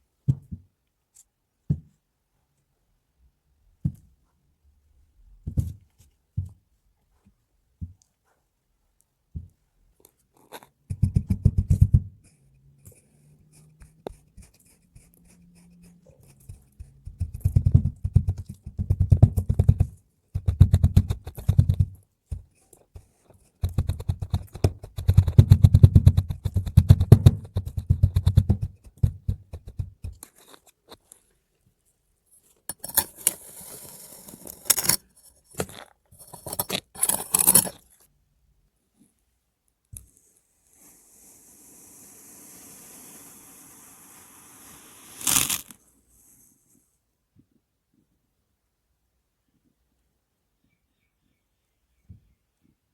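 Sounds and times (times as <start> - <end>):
hissy scraping: 40.7 - 45.8
sand squished and crackling: 45.1 - 45.8.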